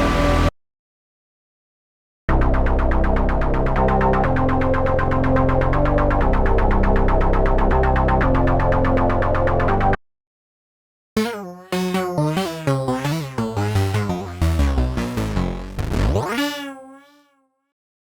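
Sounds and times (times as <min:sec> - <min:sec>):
synth bass notes: 0:00.0 - 0:00.5, 0:02.3 - 0:10.0, 0:11.2 - 0:17.2
rapidly pulsing synth: 0:11.2 - 0:17.2.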